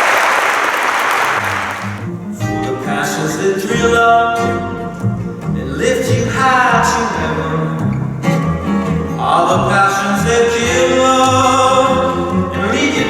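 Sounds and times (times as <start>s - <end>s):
audience applause: 0.0s - 2.1s
plucked acoustic guitar: 1.8s - 13.0s.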